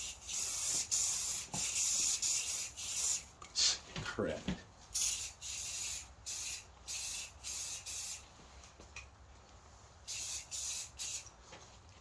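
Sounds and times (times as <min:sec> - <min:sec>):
aerosol spray hissing: 0:00.0 - 0:03.2, 0:05.0 - 0:08.2, 0:10.1 - 0:11.3.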